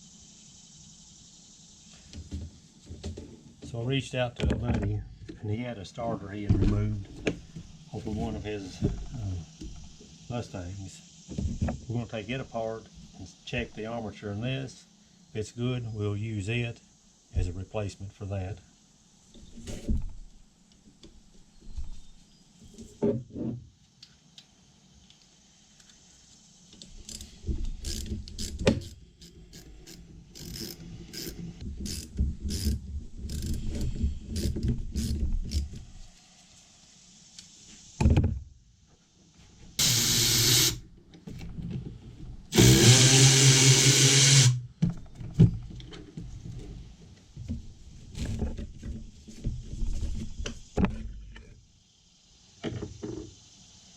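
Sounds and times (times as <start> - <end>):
power tool running: 39.8 - 40.8, 42.5 - 44.6.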